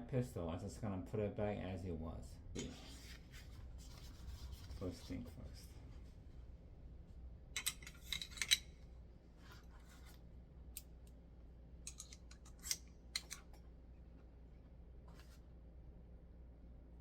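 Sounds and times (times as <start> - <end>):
metal gun parts clicking: 7.6 - 8.8, 11.8 - 13.6
metal parts scraping: 7.6 - 8.8, 11.9 - 13.4.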